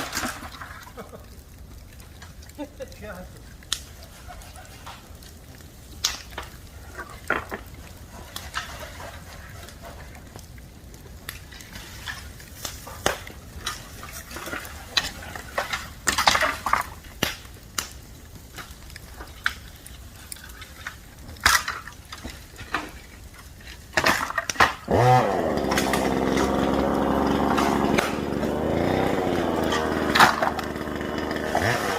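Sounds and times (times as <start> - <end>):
bonfire crackling and popping: 0.0 - 31.9.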